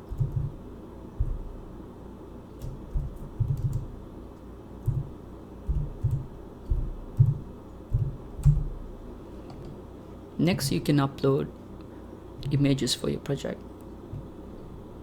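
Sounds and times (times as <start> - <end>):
typing on computer keyboard: 0.1 - 0.6, 2.6 - 4.0, 4.8 - 8.8.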